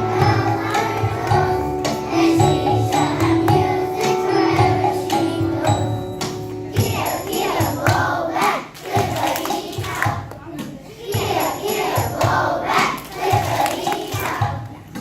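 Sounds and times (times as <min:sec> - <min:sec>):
music over jingling beat: 0:00.0 - 0:08.2, 0:11.2 - 0:12.6
group of voices singing: 0:00.0 - 0:10.2, 0:11.0 - 0:14.6.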